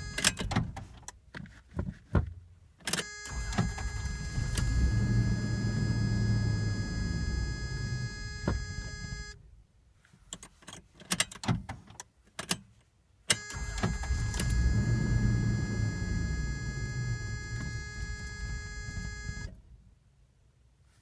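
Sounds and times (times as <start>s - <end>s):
car engine running and stalling: 3.3s - 9.4s, 13.4s - 19.6s.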